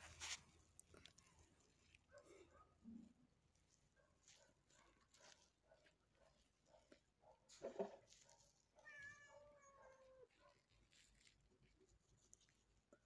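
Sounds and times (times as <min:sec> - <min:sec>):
cat meowing: 0:08.8 - 0:10.3.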